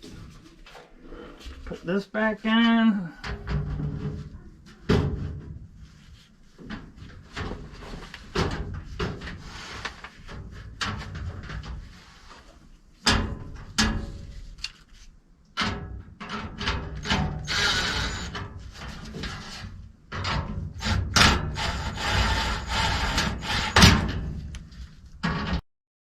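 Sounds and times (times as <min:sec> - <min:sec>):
metal parts knocking and clunking: 0:15.6 - 0:25.6.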